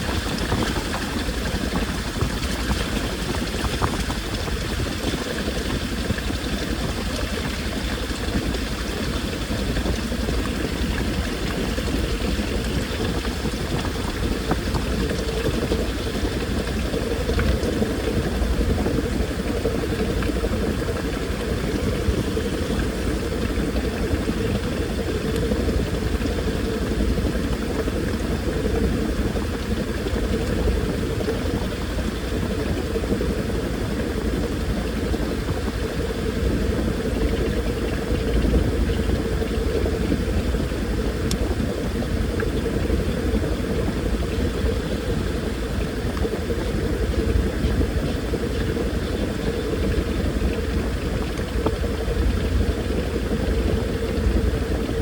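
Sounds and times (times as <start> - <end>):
water sloshing in drum: 0.0 - 28.6
washing machine motor hum: 0.0 - 55.0.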